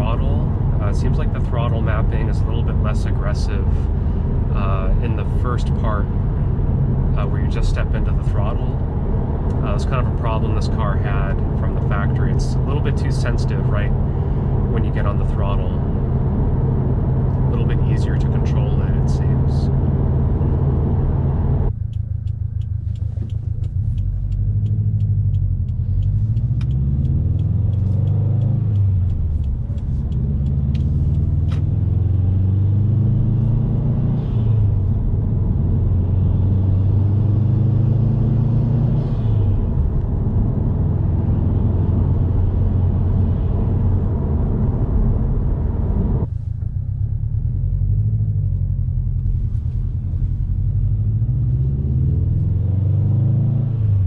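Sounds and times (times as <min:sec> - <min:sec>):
car engine revving: 0:00.0 - 0:46.3, 0:47.2 - 0:54.0
light fast ticking: 0:21.7 - 0:31.3.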